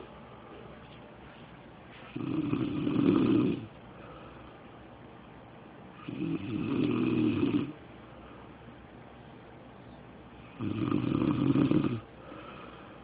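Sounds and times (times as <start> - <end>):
man snoring: 2.1 - 3.7, 6.0 - 7.8, 10.5 - 12.1.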